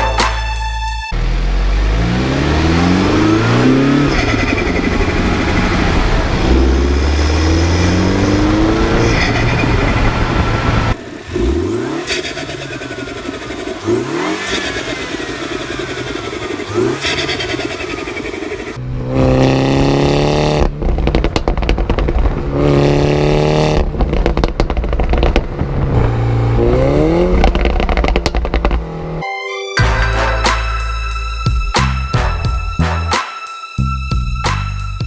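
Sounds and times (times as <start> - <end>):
engine revving: 0.0 - 21.2
car engine accelerating: 0.0 - 29.2.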